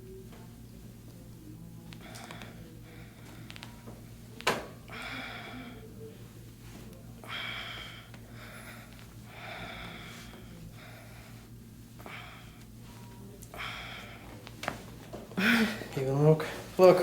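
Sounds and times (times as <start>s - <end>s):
person breathing heavily: 4.9s - 6.2s, 7.2s - 12.7s, 13.5s - 14.4s, 15.4s - 16.8s.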